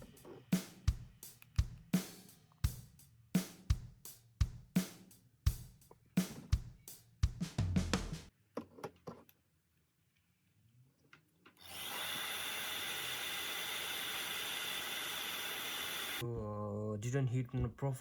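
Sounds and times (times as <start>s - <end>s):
drum beats of music: 0.0s - 8.3s
heat gun blowing: 11.6s - 16.2s.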